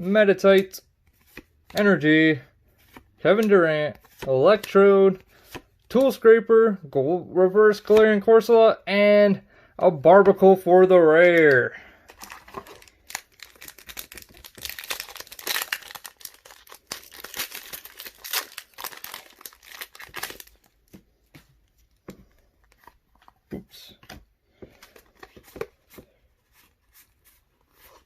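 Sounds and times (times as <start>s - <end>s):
cards rustling and clicking: 0.4s - 2.0s, 2.6s - 6.3s, 10.2s - 28.0s
foil wrapper tearing and crinkling: 12.2s - 20.7s.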